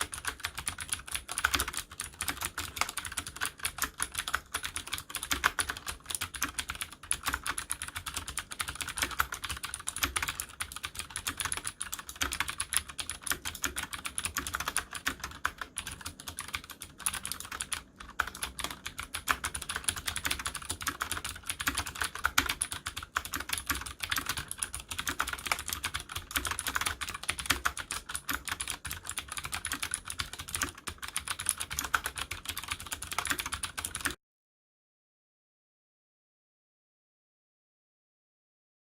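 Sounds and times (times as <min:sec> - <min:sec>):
mechanical keyboard typing: 0:00.0 - 0:34.2.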